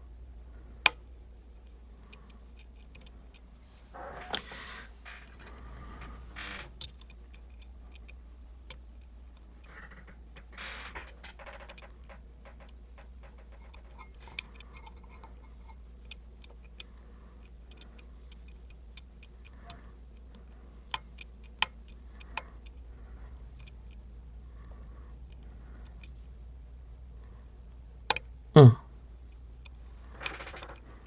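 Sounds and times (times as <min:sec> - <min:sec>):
small metallic clicks: 0:01.6 - 0:26.5, 0:29.2 - 0:31.0.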